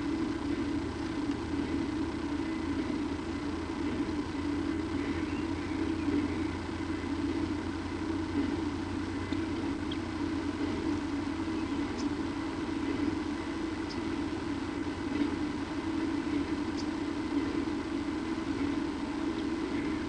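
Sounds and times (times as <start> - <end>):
steady low hum: 0.0 - 20.0
faint high chirps: 5.0 - 6.6.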